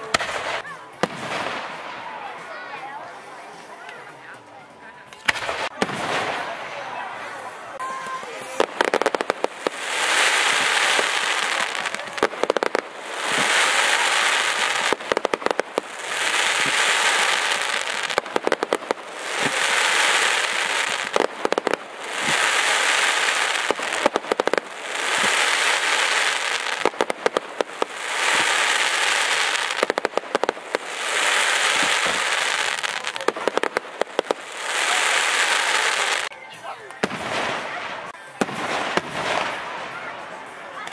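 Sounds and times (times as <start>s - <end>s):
firework crackling pops: 0.0s - 2.2s, 5.1s - 6.9s, 7.8s - 36.3s, 36.9s - 40.1s
firework rising hiss: 8.2s - 36.3s.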